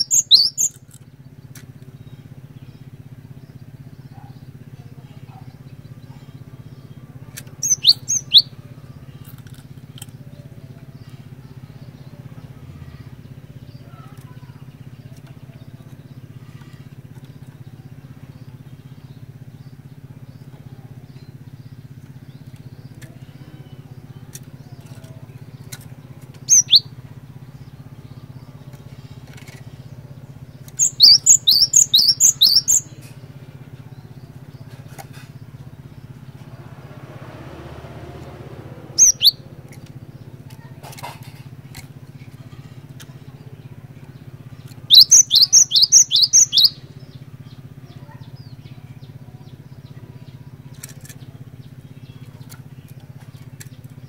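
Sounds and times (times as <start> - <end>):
short bird calls: 0.0 - 0.8, 7.5 - 8.6, 26.4 - 27.0, 30.6 - 33.2, 38.9 - 40.2, 44.6 - 46.9
tit singing: 23.0 - 33.2, 36.4 - 40.2, 44.6 - 46.8.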